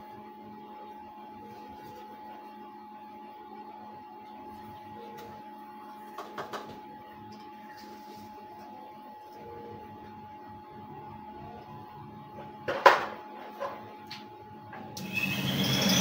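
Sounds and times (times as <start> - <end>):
cotton candy machine humming: 14.0 - 16.0.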